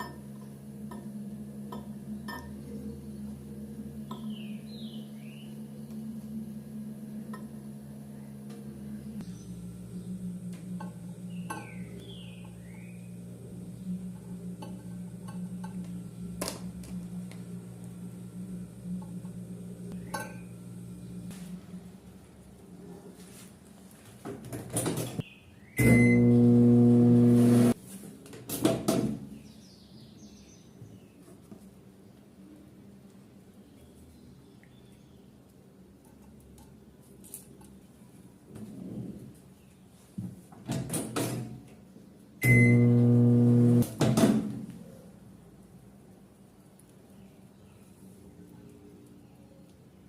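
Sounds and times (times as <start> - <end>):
microwave oven humming: 0.0 - 22.0, 25.8 - 27.8, 42.4 - 44.2.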